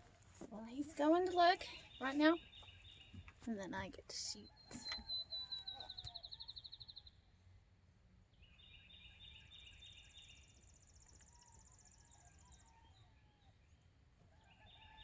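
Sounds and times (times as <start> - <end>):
songbirds trilling: 0.6 - 7.4, 8.3 - 15.0.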